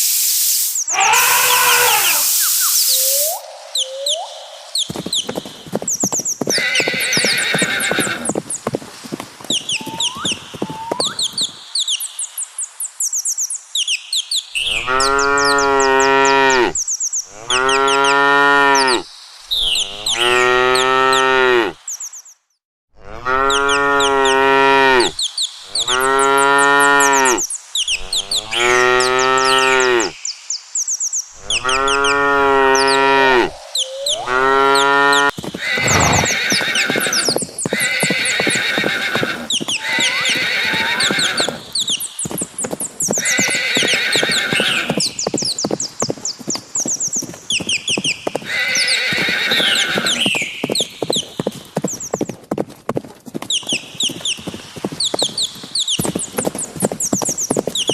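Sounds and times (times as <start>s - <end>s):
high chirping: 0.1s - 8.2s, 9.5s - 12.1s, 32.8s - 34.4s
cattle mooing: 34.2s - 36.4s.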